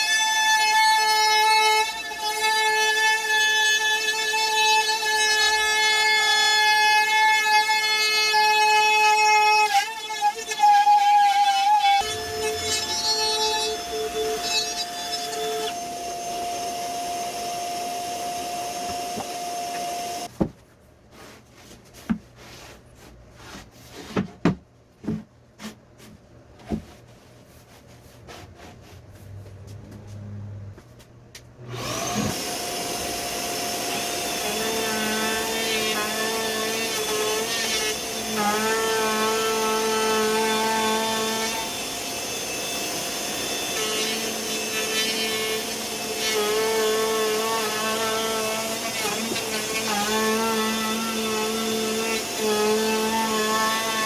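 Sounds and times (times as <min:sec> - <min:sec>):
power tool whining: 0:09.7 - 0:20.3, 0:31.6 - 0:54.0.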